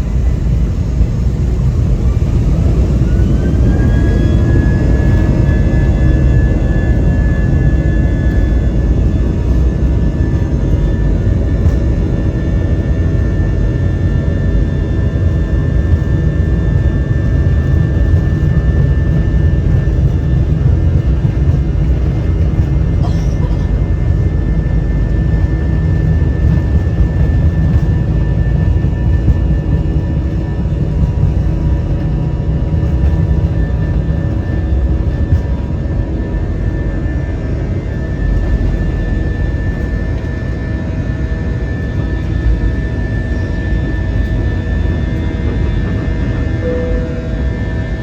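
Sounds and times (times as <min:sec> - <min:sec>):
jet engine rumble and airflow: 0:00.0 - 0:48.0
thin high whine: 0:46.6 - 0:48.0.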